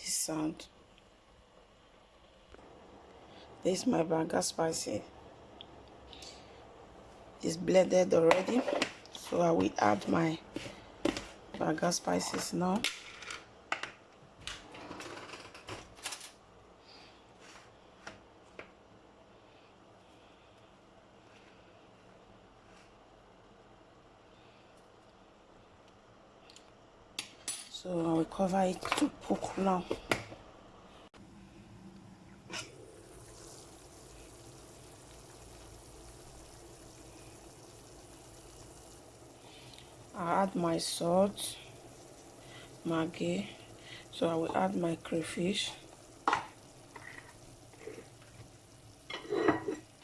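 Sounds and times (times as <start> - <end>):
pot simmering: 0.8 - 12.9, 28.1 - 50.0.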